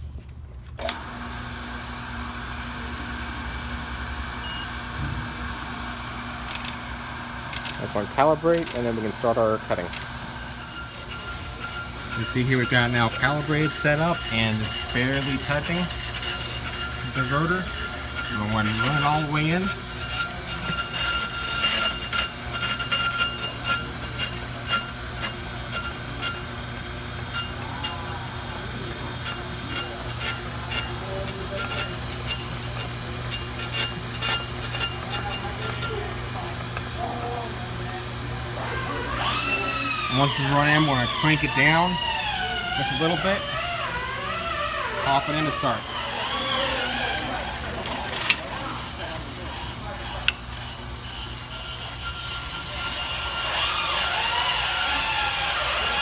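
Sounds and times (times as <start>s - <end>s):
brake lathe motor humming: 0.8s - 56.0s
short beep: 4.4s - 4.7s.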